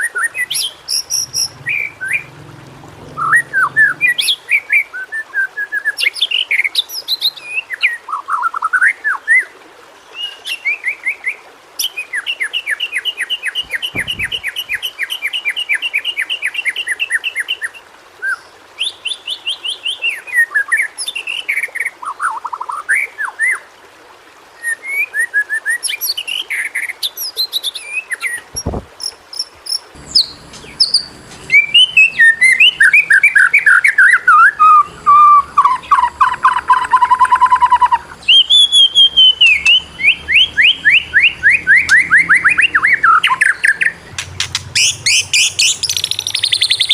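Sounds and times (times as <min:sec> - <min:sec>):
bird singing whistled phrases: 0:30.0 - 0:46.9.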